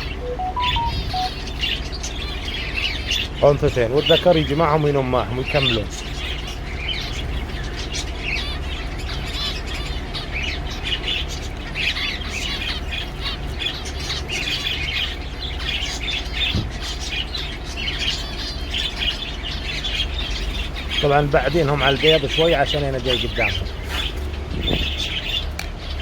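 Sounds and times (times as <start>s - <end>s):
low steady hum: 0.0s - 4.0s
finches calling: 0.0s - 26.0s.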